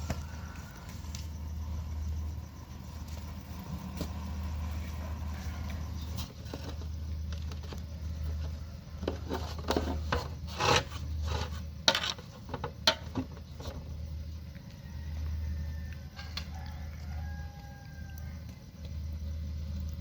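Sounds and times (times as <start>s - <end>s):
low steady hum: 0.0s - 20.0s
hard objects scraping and knocking: 6.0s - 13.9s.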